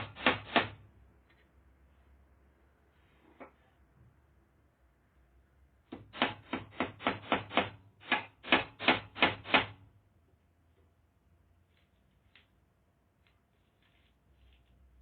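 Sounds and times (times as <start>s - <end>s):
hammer striking nail: 0.0s - 0.8s, 5.9s - 9.8s.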